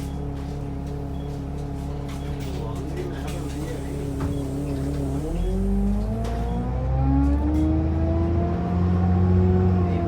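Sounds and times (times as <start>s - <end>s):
bus engine whine rising: 3.8s - 10.0s.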